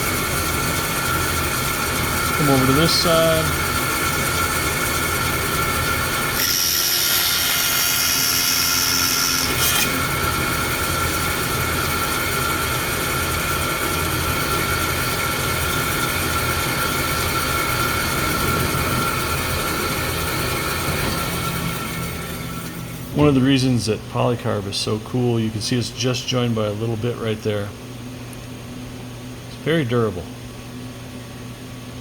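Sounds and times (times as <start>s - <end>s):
bandsaw whining: 0.0s - 23.0s
saw blade cutting plastic sheet: 6.3s - 10.4s.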